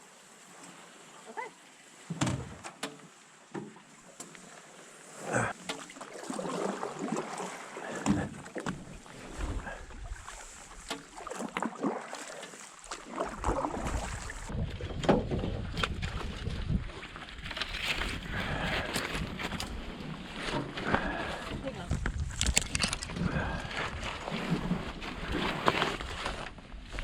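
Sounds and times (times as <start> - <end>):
wind rumble on microphone: 13.3 - 27.0
branches knocking and snapping: 21.9 - 23.2.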